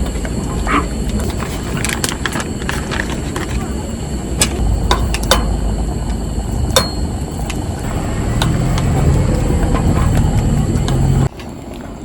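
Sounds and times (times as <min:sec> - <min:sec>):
steady low rumble: 0:00.0 - 0:12.0
sharp metallic clinks and knocks: 0:04.5 - 0:11.3.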